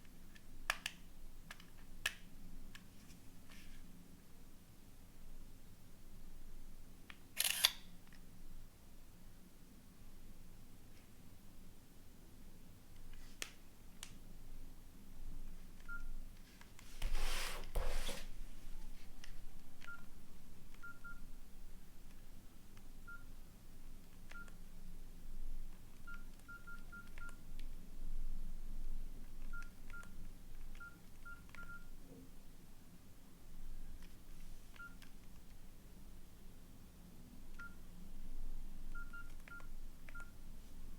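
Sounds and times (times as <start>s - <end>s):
keypad beeps: 15.8s - 16.1s, 19.8s - 20.1s, 20.7s - 21.2s, 24.3s - 24.6s, 26.0s - 27.4s, 29.4s - 30.2s, 30.8s - 31.9s, 34.7s - 35.1s, 37.6s - 37.8s, 38.9s - 40.4s.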